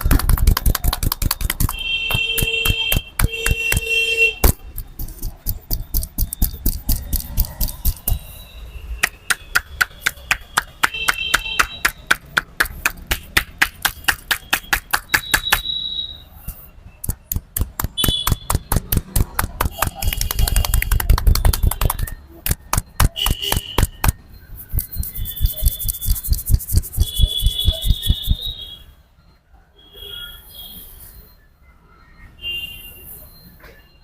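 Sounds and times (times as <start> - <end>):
hands slapping head: 0.0 - 8.1, 9.0 - 15.6, 17.0 - 28.4
high steady beeping tone: 1.1 - 10.1, 15.1 - 29.4.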